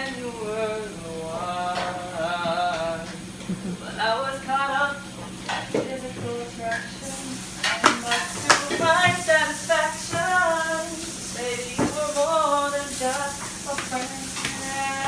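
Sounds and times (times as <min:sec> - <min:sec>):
dishwasher water spray hiss: 0:05.0 - 0:15.0.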